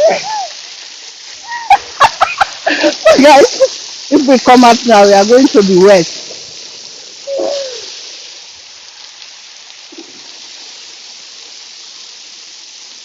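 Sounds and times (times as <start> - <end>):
waterfall rushing: 0.0 - 8.9.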